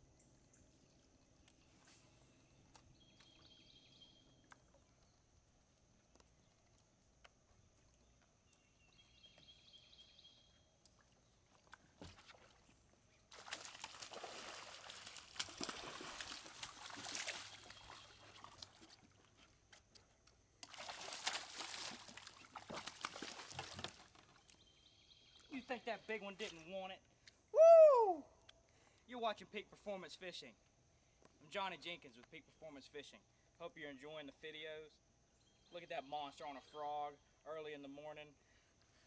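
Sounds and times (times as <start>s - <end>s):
water splashing and sloshing: 10.4s - 24.6s.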